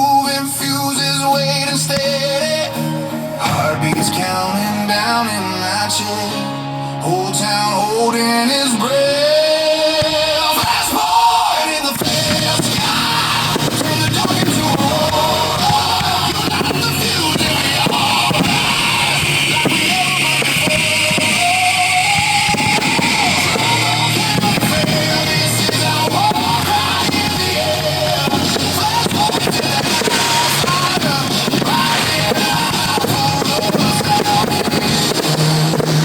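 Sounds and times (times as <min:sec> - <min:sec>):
electric guitar melody: 0:00.0 - 0:10.5, 0:12.0 - 0:36.0
drum kit: 0:10.0 - 0:36.0.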